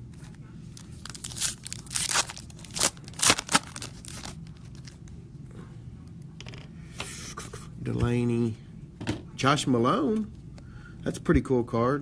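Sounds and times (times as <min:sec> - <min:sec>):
foil wrapper tearing and crinkling: 0:00.8 - 0:05.0.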